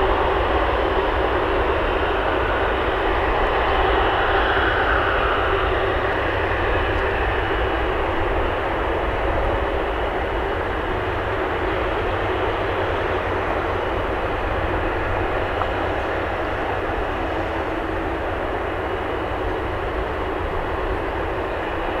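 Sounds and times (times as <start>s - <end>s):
jet engines roaring: 0.0s - 22.0s.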